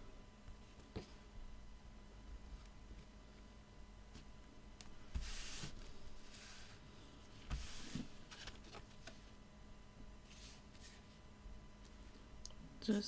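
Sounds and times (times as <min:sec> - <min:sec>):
paper and card rustling: 0:07.5 - 0:09.2.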